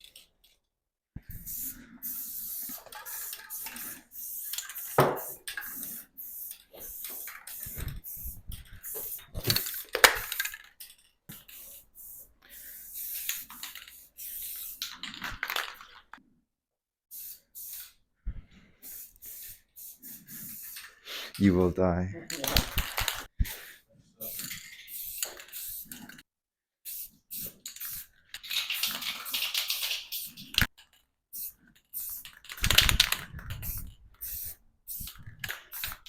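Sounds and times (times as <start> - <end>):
spray-paint can hissing: 1.3 - 10.5, 11.3 - 15.0, 17.1 - 18.0, 18.8 - 20.9, 24.3 - 26.0, 26.9 - 30.7, 31.3 - 36.0.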